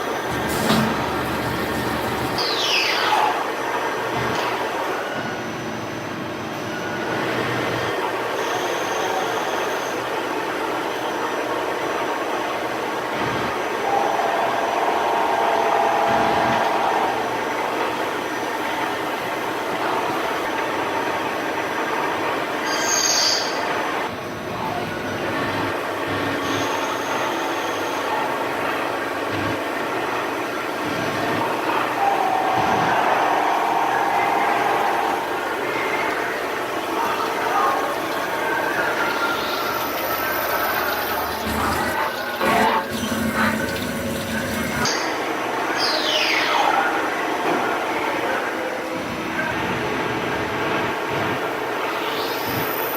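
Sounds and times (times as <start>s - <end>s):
coolant splashing: 0.0s - 2.6s, 31.0s - 45.5s
lathe machining noise: 0.0s - 6.4s, 25.8s - 45.7s.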